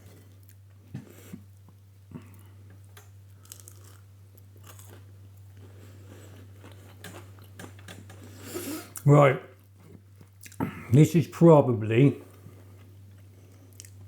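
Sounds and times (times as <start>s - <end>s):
person chewing crunchy food: 0.0s - 9.0s, 9.7s - 10.8s, 12.3s - 14.0s.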